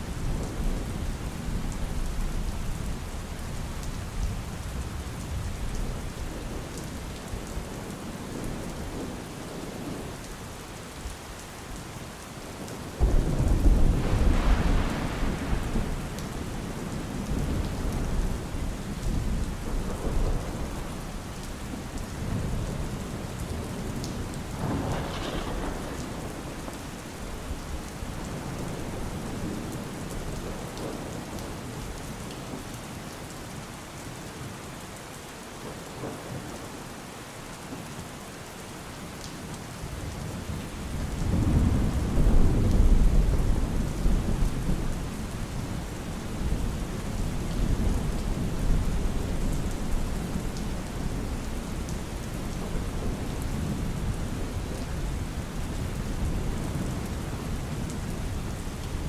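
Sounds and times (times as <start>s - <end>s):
steady rain falling: 0.0s - 59.0s
thunder rumbling: 13.0s - 21.2s, 21.8s - 31.1s, 40.9s - 59.0s.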